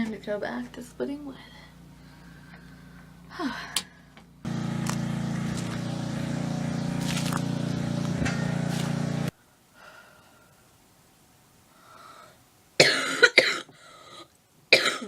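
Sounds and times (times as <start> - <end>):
faint breaths: 1.3 - 4.2, 9.4 - 10.8, 11.6 - 12.5
engine hum: 1.4 - 9.3
person hacking cough: 12.8 - 13.8, 14.7 - 15.0.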